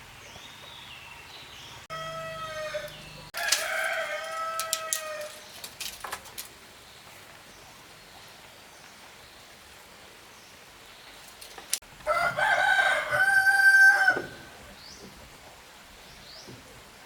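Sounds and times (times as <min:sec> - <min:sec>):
rooster crowing: 0:01.9 - 0:05.5, 0:12.0 - 0:14.5.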